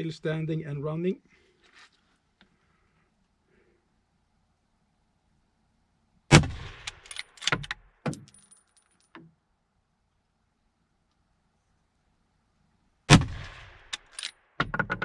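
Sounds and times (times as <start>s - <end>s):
rifle shot: 6.3s - 7.2s, 13.1s - 14.2s.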